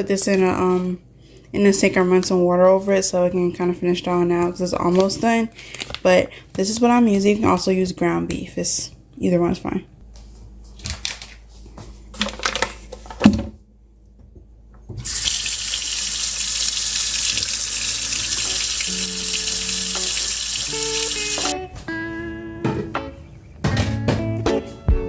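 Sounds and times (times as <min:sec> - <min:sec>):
faucet water running into sink: 0:15.0 - 0:21.6.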